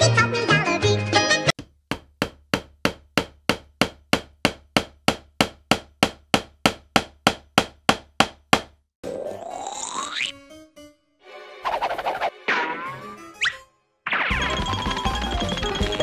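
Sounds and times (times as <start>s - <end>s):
sharp hammer-like knocks: 1.6s - 8.8s.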